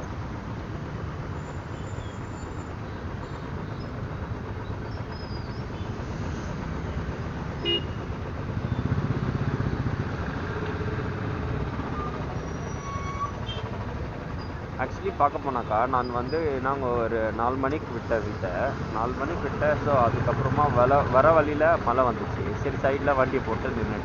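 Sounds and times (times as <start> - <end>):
vehicle engines running: 0.0 - 24.0
car horn toot: 7.6 - 8.1.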